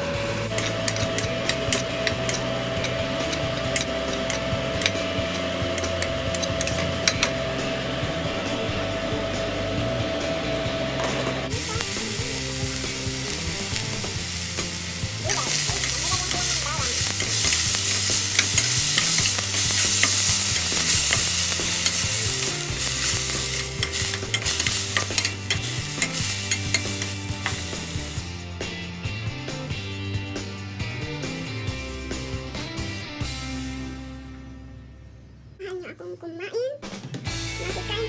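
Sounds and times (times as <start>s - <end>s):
spatula scraping a pan: 0.6s - 7.5s, 11.0s - 28.4s
rice sizzling in a hot pan: 0.6s - 28.6s.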